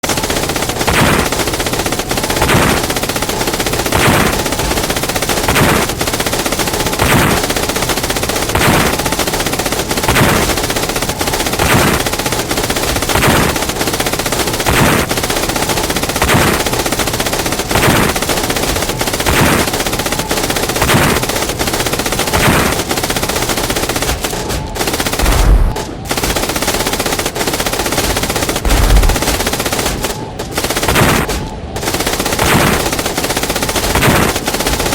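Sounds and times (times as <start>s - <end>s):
machine-gun fire: 0.0s - 34.9s
deep low booms: 25.2s - 25.8s, 28.7s - 29.5s.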